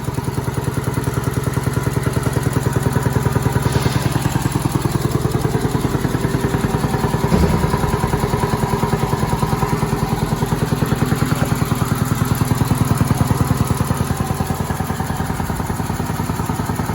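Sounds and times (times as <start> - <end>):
air compressor pumping: 0.2 - 16.9
loud knock: 3.6 - 12.4.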